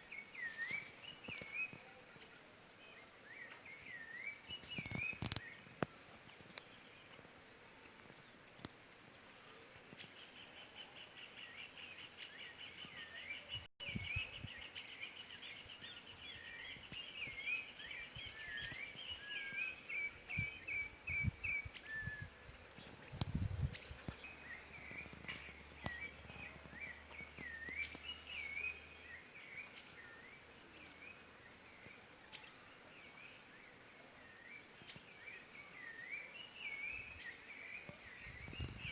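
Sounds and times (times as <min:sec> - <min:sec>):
thrush whistled song: 0:00.0 - 0:01.9, 0:11.9 - 0:30.2.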